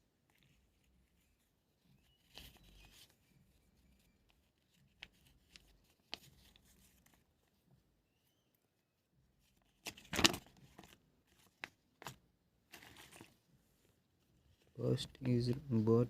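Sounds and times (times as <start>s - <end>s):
paper rustling: 0.3s - 7.6s, 9.5s - 13.5s.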